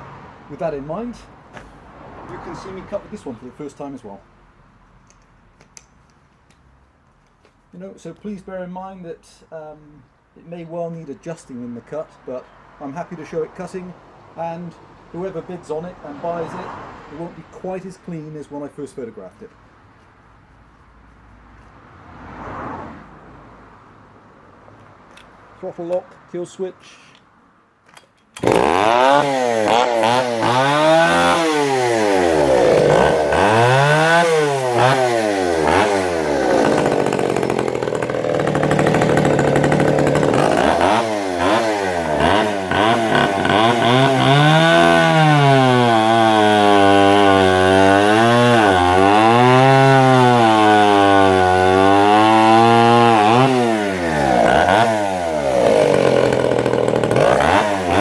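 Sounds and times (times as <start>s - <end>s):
chainsaw revving and cutting wood: 16.0s - 17.3s, 28.4s - 58.0s.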